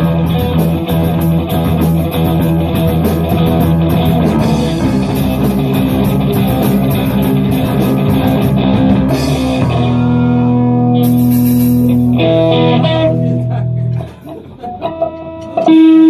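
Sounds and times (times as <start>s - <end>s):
drums: 0.0s - 14.7s
guitar chord ringing: 0.0s - 16.0s
rock on electric guitar: 0.0s - 16.0s.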